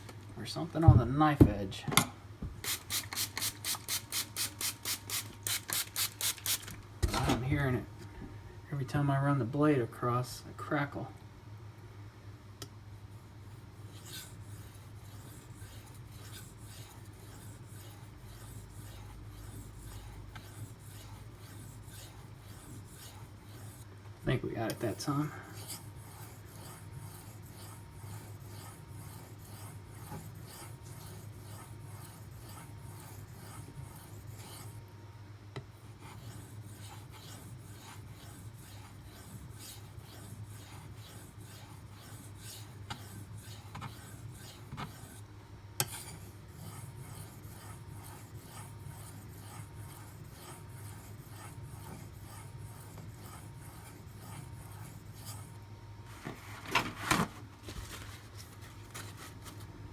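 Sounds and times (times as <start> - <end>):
knife scraping on sharpening stone: 36.0 - 45.2, 45.8 - 55.5.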